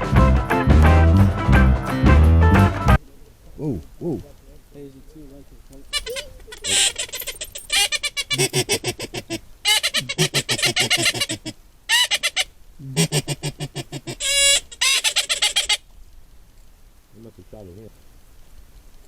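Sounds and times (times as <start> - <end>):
duck quacking: 5.9 - 15.8.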